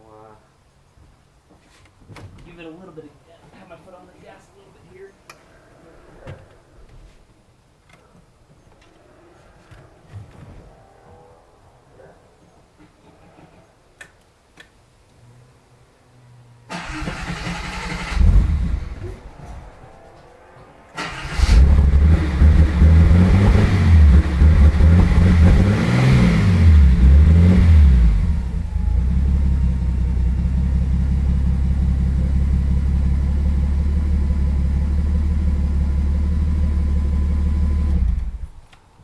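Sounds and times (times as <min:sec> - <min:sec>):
car engine starting and revving: 0:16.7 - 0:38.6.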